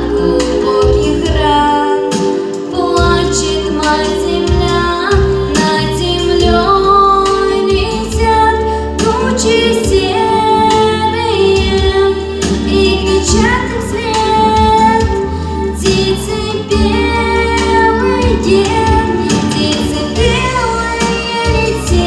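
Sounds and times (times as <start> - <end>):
girl singing: 0.0 - 22.0
pop backing track: 0.0 - 22.0.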